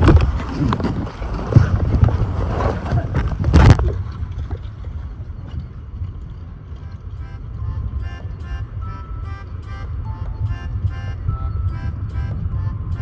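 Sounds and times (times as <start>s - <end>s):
strong wind buffeting microphone: 0.0s - 13.0s
background music: 6.9s - 13.0s.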